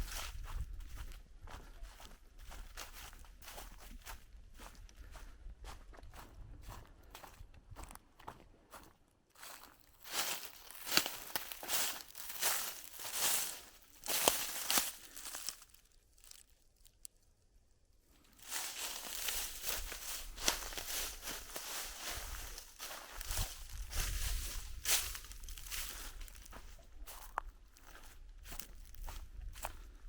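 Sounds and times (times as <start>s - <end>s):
footsteps crunching through dry leaves: 0.0s - 5.2s, 8.7s - 16.5s, 18.3s - 29.9s.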